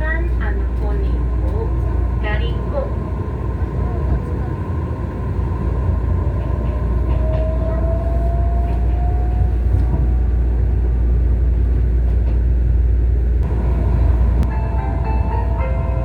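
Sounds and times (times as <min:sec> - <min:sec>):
train rumbling along track: 0:00.0 - 0:16.0.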